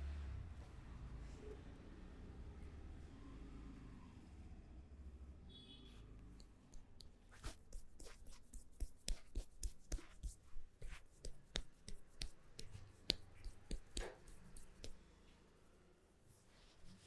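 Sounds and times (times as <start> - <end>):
hands tapping and slapping head: 6.8 - 15.0.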